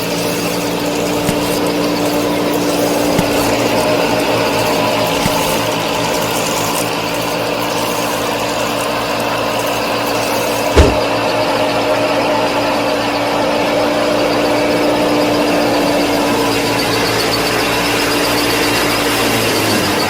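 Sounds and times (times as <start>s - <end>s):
small motor humming and rattling: 0.0s - 20.0s
sharp knock: 10.8s - 11.1s.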